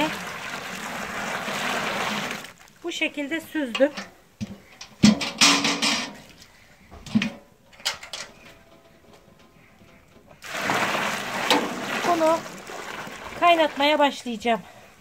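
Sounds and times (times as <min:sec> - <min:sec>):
liquid pouring: 0:00.0 - 0:02.8, 0:10.4 - 0:14.2
liquid splashing: 0:00.0 - 0:03.0, 0:10.4 - 0:14.5.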